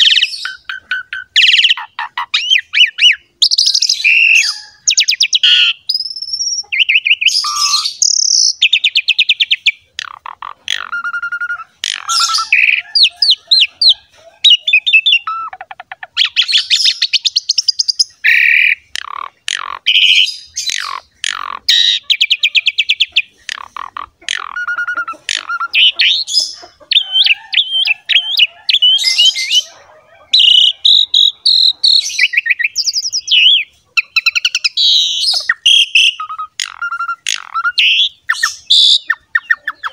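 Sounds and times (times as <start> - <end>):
starling singing: 0.0 - 39.9.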